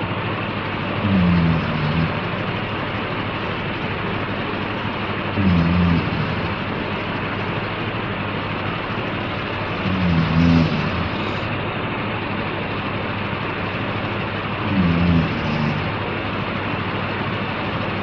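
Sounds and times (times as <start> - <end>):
man snoring: 1.0 - 2.4, 5.3 - 6.9, 9.2 - 11.5, 14.6 - 16.0.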